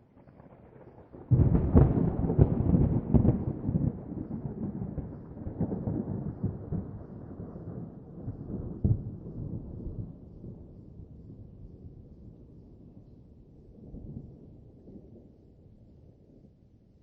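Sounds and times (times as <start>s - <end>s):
thunder crackles: 0.2s - 10.6s
thunder rumbling: 0.2s - 10.6s.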